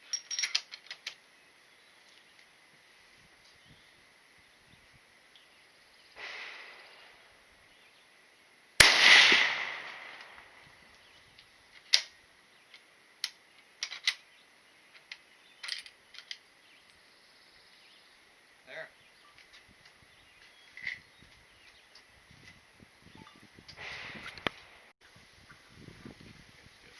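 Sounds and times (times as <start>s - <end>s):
gunshots with echo: 6.2s - 7.3s, 8.8s - 10.6s.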